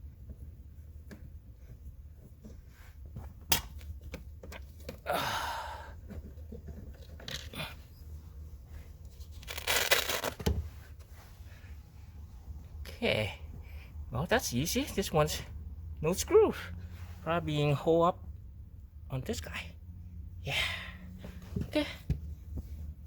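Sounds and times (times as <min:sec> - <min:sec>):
scraping rustling noises: 0:08.2 - 0:12.5.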